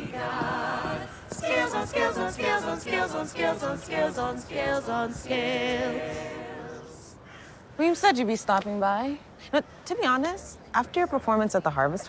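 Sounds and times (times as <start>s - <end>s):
choir singing a cappella: 0.0s - 7.3s.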